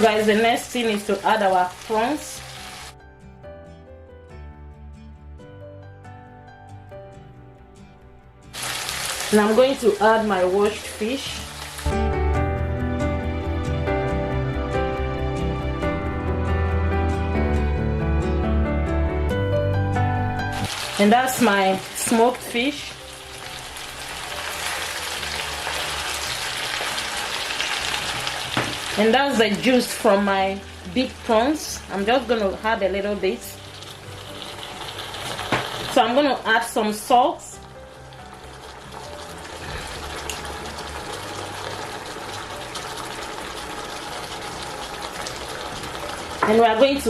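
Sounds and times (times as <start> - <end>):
oil sizzling in a pot: 0.0 - 3.0, 8.5 - 12.4, 20.5 - 47.0
soup hissing and bubbling: 1.2 - 3.0, 8.5 - 12.0, 20.5 - 31.6, 33.6 - 36.1, 37.6 - 46.4.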